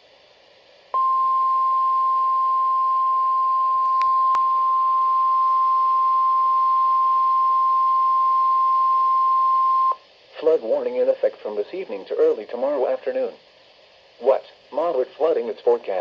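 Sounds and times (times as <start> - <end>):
faint radio hiss: 0.0 - 16.0
steady alarm beep: 1.0 - 10.0.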